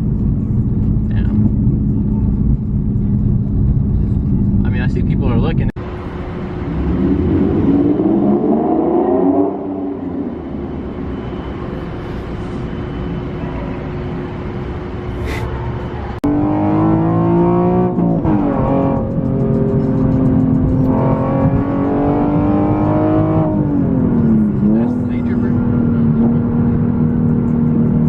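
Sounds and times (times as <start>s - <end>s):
low engine drone: 0.0s - 28.0s
car engine revving: 0.2s - 12.1s, 13.9s - 28.0s.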